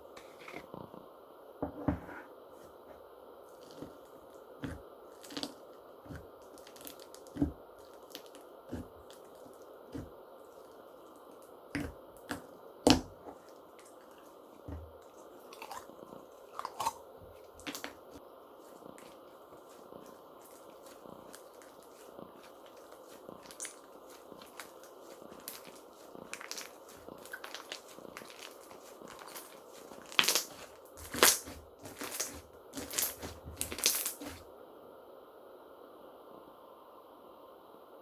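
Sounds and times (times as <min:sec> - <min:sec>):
slime squeezed sticky pops: 0:24.4 - 0:34.4.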